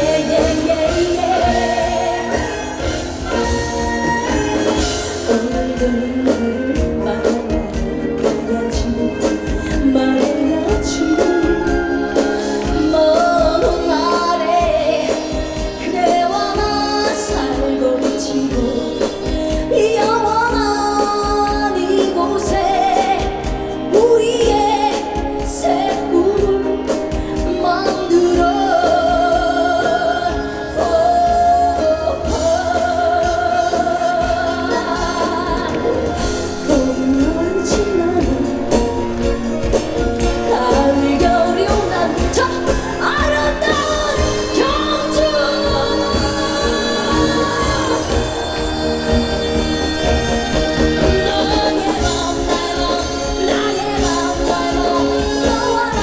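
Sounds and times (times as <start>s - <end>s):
backing music with drum beat: 0.0s - 56.0s
woman singing with vibrato: 0.0s - 56.0s.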